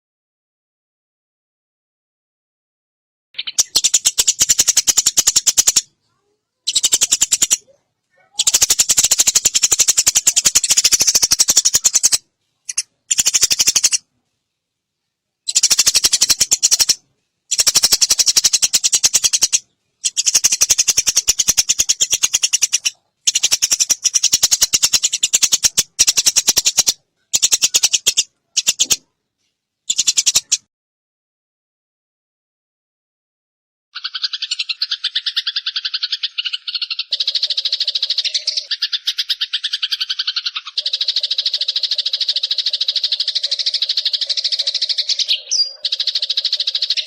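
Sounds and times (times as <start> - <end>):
sparrow chattering rattle: 3.4 - 5.9, 6.7 - 14.1, 15.4 - 29.0, 29.9 - 30.7, 34.0 - 47.0.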